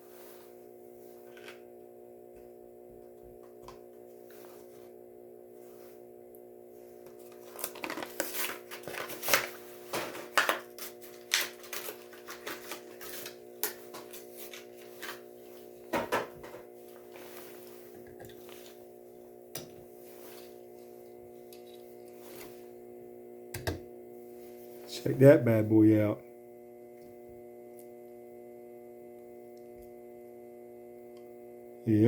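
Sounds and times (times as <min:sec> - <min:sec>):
steady hum: 0:00.0 - 0:32.0
plastic packaging crinkling and snapping: 0:07.2 - 0:15.2.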